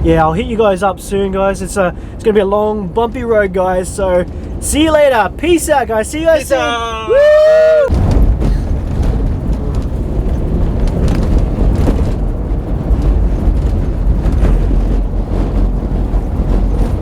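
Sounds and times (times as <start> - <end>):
vehicle engine rumble: 0.0 - 6.5, 7.1 - 17.0
wind buffeting microphone: 7.5 - 17.0.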